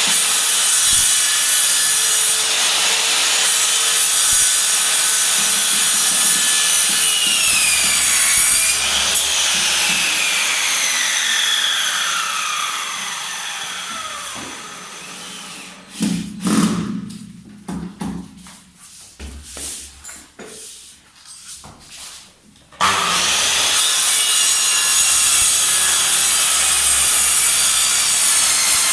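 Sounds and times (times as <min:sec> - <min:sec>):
miter saw cutting wood: 0:00.0 - 0:16.7, 0:22.8 - 0:28.9.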